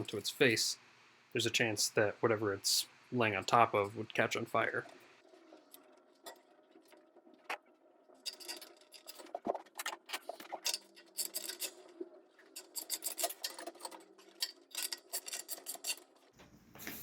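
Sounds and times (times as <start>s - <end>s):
small parts scraping and clicking: 4.8s - 16.3s.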